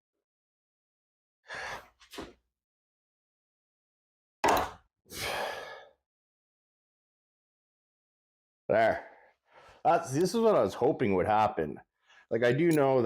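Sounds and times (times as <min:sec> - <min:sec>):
long exhale: 0:05.1 - 0:05.9
strained breathing: 0:05.1 - 0:06.0.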